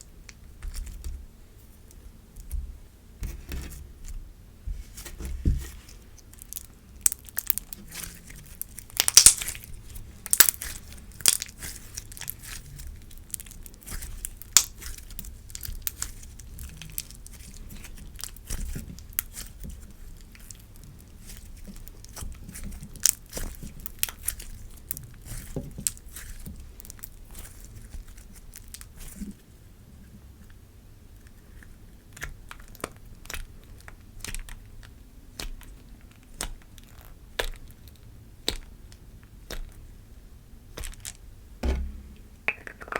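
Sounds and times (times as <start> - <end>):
slime crackling and popping: 6.3 - 28.9.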